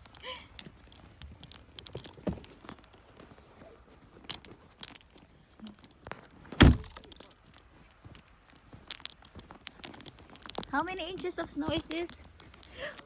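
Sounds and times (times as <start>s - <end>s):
small clicks and rustling: 0.0s - 13.0s
car door shutting: 6.5s - 7.0s.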